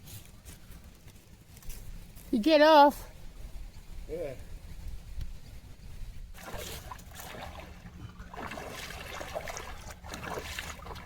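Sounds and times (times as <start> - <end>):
water splashing and dribbling: 6.3 - 11.0.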